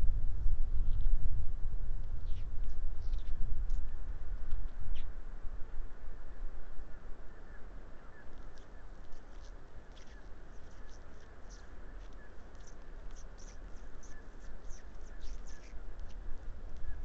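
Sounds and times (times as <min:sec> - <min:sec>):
low rumble: 0:00.0 - 0:06.1.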